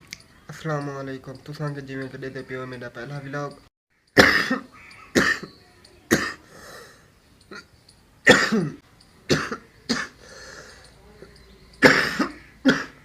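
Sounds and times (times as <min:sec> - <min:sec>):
man coughing: 0:08.3 - 0:10.2, 0:11.8 - 0:13.0.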